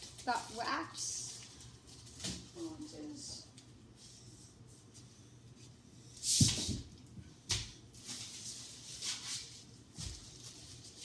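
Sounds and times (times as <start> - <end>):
food packaging rustling: 0.0 - 2.9, 7.9 - 11.0.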